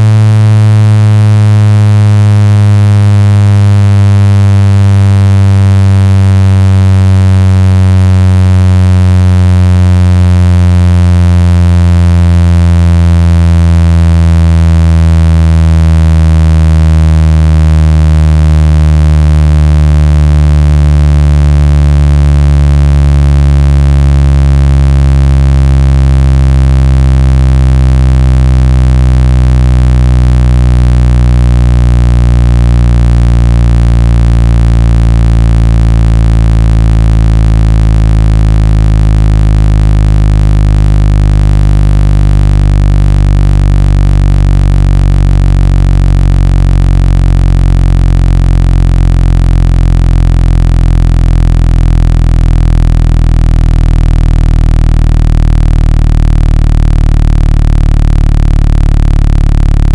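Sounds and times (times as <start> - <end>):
low buzzing tone falling in pitch: 0.0 - 59.9.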